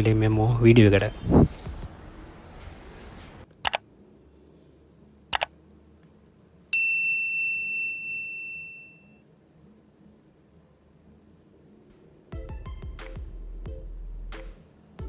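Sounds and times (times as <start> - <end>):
quick double clicks: 3.6 - 3.8
bright bell-like ding: 6.8 - 9.2.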